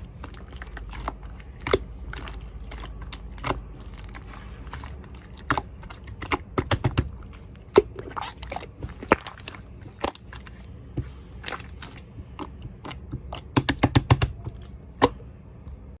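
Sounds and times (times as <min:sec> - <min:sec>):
slime squishing by hand: 0:00.0 - 0:15.9.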